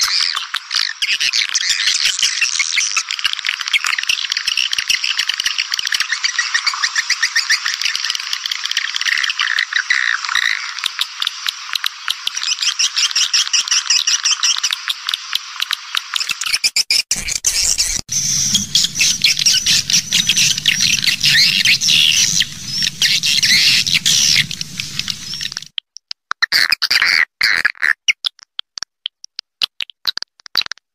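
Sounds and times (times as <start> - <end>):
low steady hum: 17.2 - 25.7
swiftlets twittering: 17.2 - 25.7.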